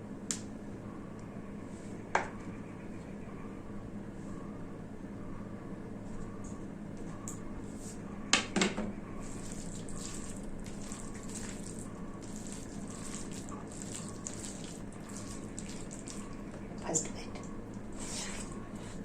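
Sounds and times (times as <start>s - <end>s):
steady low hum: 0.0s - 19.0s
wet squelching of hand mixing food: 9.2s - 19.0s.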